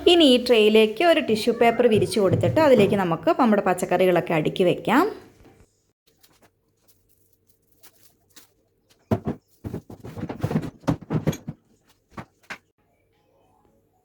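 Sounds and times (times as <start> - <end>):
plastic-wrapped vegetables rustling: 6.1 - 11.2.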